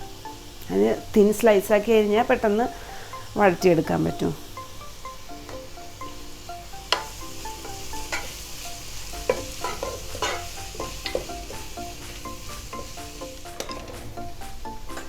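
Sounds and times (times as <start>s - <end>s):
onions sizzling in hot oil: 0.0s - 15.0s
spoon scraping a pan: 6.8s - 14.1s.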